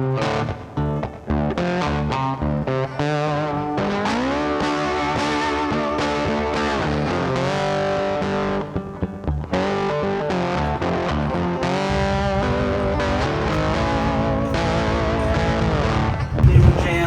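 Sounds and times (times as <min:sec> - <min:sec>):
rock music: 0:00.0 - 0:17.0.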